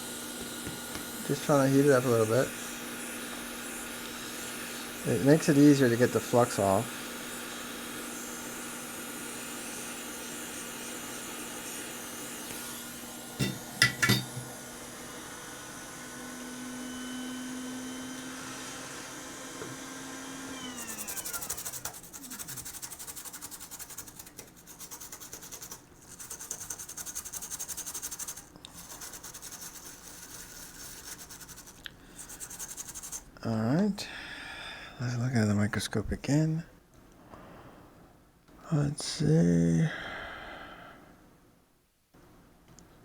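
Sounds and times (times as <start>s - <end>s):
fan winding down: 0.0s - 21.8s
hot air station blowing: 0.0s - 22.6s
scratchy rubbing strokes: 20.9s - 33.4s.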